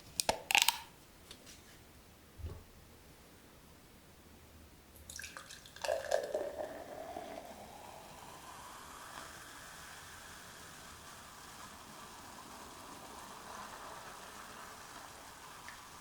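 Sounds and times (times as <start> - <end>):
water pouring into pot: 5.1 - 16.0.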